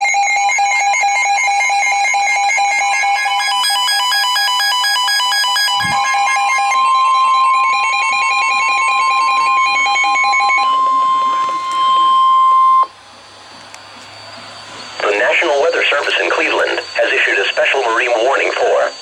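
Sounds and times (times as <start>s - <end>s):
steady warning alarm tone: 0.0s - 19.0s
electronic synthesized melody: 2.7s - 13.0s.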